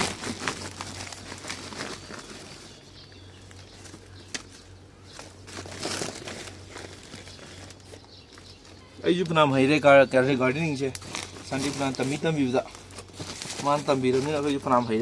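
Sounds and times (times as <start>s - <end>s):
material rustling and crinkling: 0.0s - 9.4s, 10.6s - 15.0s.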